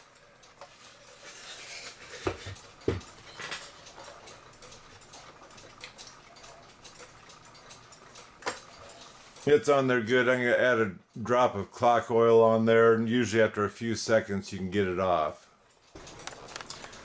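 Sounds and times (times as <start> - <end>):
small clicks of clock hands: 0.0 - 11.3, 15.6 - 17.0
sharp knocks on clock: 2.2 - 3.6.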